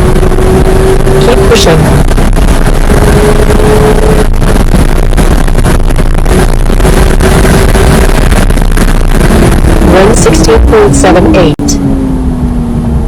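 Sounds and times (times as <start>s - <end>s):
race car engine at high revs: 0.0s - 13.0s
wind and road noise: 0.0s - 13.0s.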